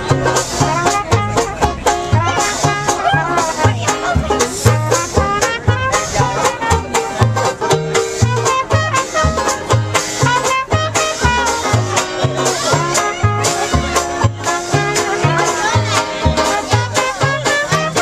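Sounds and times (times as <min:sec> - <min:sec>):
upbeat music with bass beat: 0:00.0 - 0:18.0.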